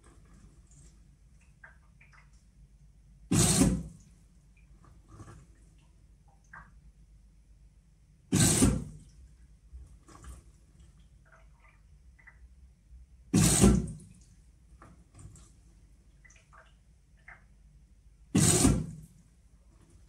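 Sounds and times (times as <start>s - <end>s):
washing machine steam hissing: 3.3s - 4.0s, 8.3s - 9.0s, 13.4s - 14.0s, 18.4s - 19.0s.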